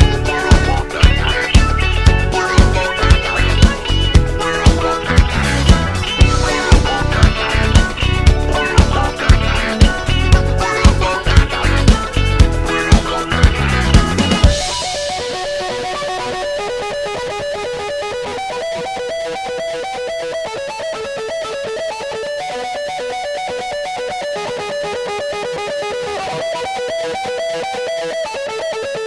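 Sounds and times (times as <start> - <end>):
picked electric guitar melody: 0.0 - 29.0.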